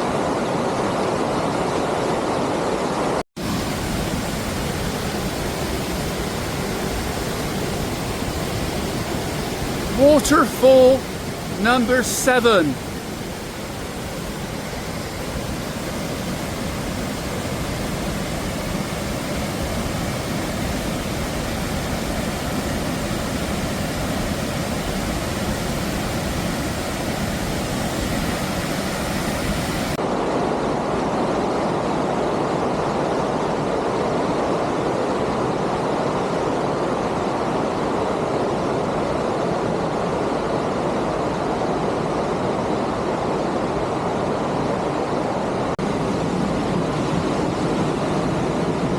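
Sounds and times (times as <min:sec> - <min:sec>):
waterfall rushing: 0:03.4 - 0:30.0.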